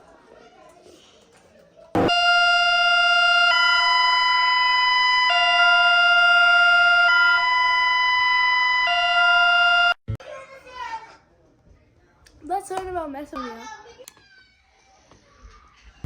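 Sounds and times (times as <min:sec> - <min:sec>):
two-tone emergency alert alarm: 0:02.1 - 0:10.0.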